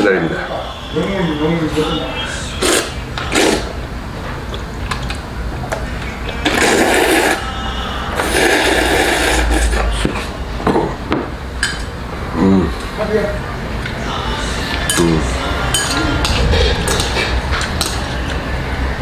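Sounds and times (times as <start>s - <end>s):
loud noodle slurping: 2.6s - 3.8s, 6.4s - 7.5s, 8.2s - 9.9s.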